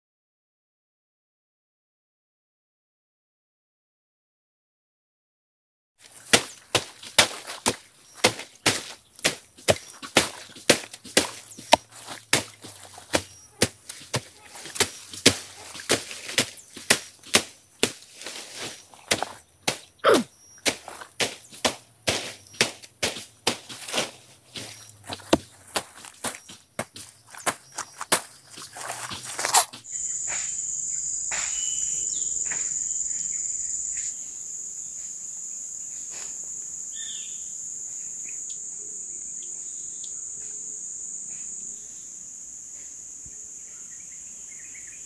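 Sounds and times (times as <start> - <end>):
hand tool chopping wood: 6.0 - 30.6, 31.3 - 31.6.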